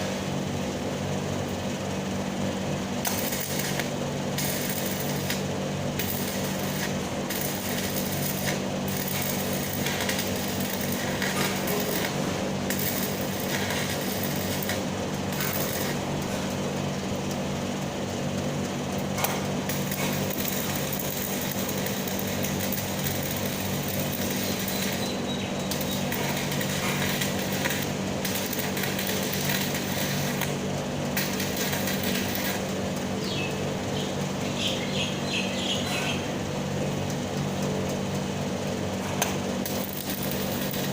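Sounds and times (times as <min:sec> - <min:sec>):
welding arc crackling: 0:02.6 - 0:33.8, 0:39.2 - 0:40.9.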